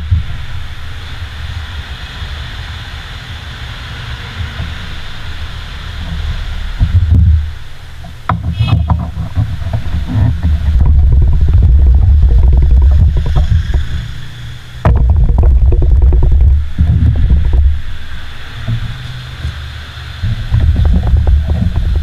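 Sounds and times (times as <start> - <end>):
wind buffeting microphone: 0.0 - 22.0
microphone handling knocks: 6.8 - 19.6, 20.2 - 22.0.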